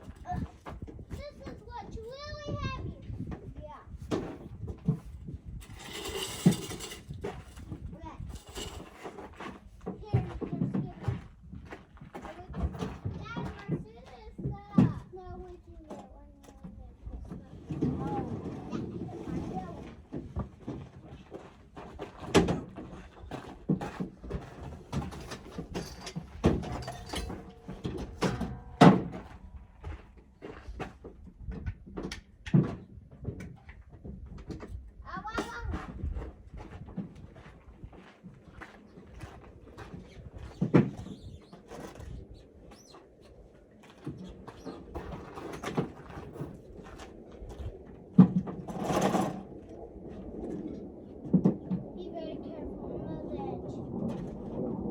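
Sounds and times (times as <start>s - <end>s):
camping gear knocking and thumping: 3.3s - 11.0s, 22.2s - 30.0s
scraping rustle: 4.2s - 10.0s
gear knocks and clicks: 23.8s - 29.4s.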